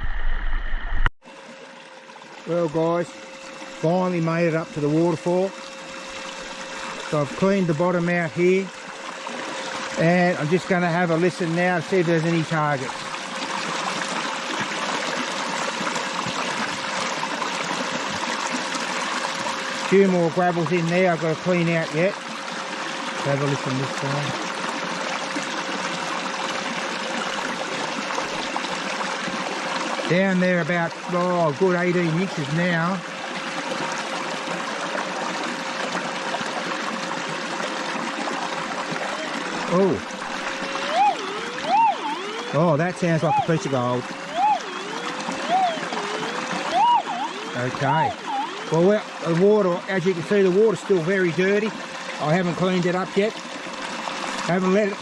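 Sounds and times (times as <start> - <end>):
waterfall splashing into pool: 6.9 - 55.0
metal detector tone: 40.4 - 49.0.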